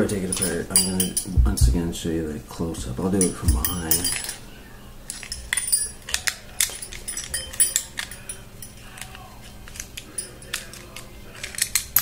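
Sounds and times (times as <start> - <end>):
metal lock parts clicking: 0.1 - 1.7, 5.1 - 12.0.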